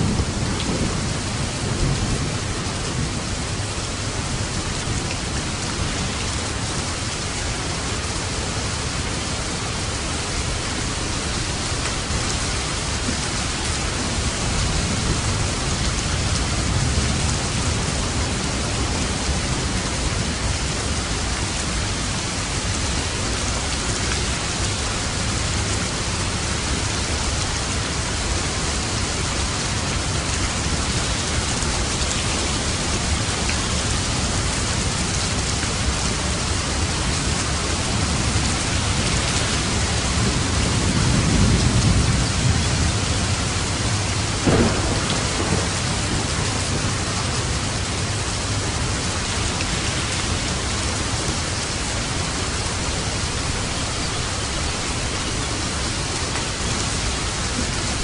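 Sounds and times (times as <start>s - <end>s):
heavy rain drumming on a roof: 0.0s - 58.0s
distant thunder rumbling: 37.8s - 51.1s.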